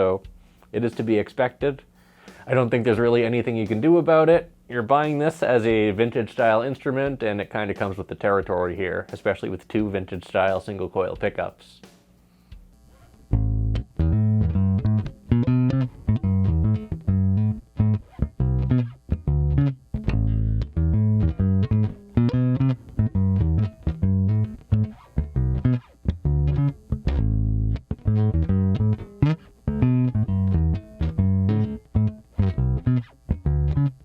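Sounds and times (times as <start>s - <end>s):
electric bass riff: 12.8s - 34.0s.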